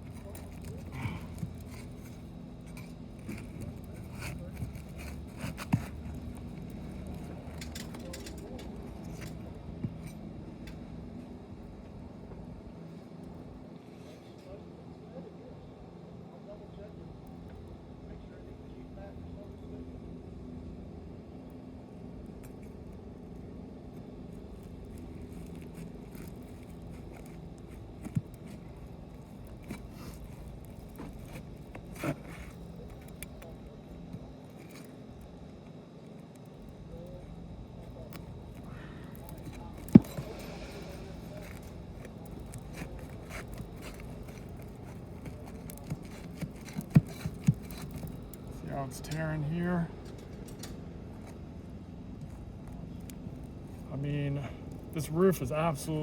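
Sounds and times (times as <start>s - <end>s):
roofing tool scraping shingles: 0.0s - 8.2s, 24.9s - 33.5s, 38.8s - 49.1s.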